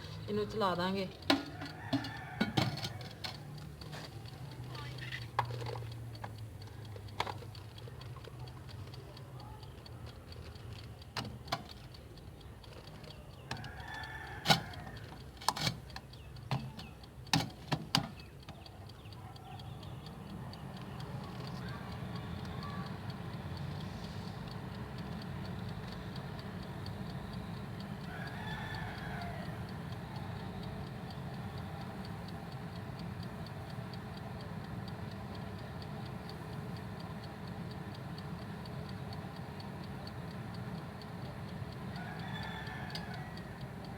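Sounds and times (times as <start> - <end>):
oven fan humming: 0.0 - 43.9
timer ticking: 0.0 - 43.9
oven clicks and knocks: 1.2 - 3.5, 16.5 - 18.2
rooster crowing: 1.3 - 3.6, 13.5 - 15.2, 28.0 - 30.0, 41.9 - 43.8.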